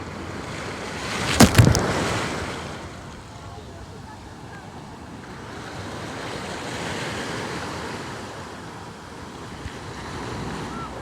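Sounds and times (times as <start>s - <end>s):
sea waves washing onto shore: 0.2s - 3.4s.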